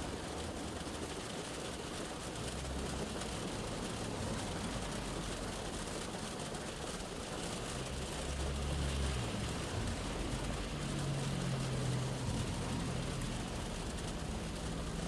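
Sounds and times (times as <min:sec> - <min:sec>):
rain pattering on a car roof: 0:00.0 - 0:15.0
passing road traffic rumble: 0:06.9 - 0:15.0.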